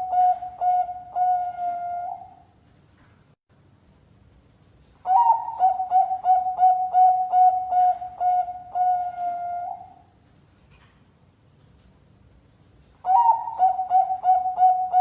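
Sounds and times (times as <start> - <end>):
dove cooing: 0.0 - 2.5, 5.0 - 10.1, 13.0 - 15.0.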